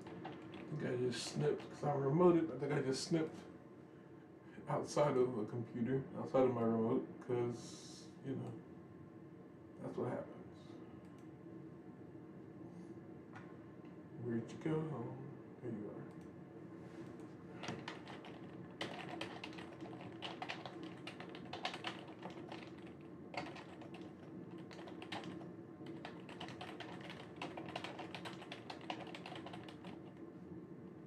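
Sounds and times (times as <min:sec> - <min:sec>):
steady low hum: 0:00.0 - 0:31.0
computer keyboard key clicks: 0:17.6 - 0:30.1.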